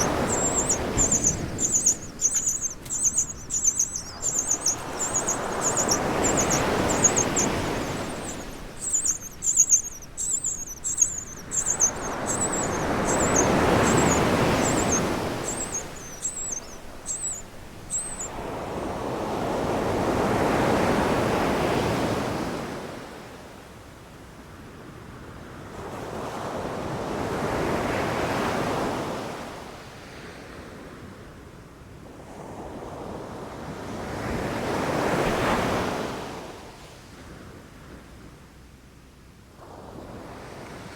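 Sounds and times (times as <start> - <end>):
bird chirping: 0.0 - 18.4.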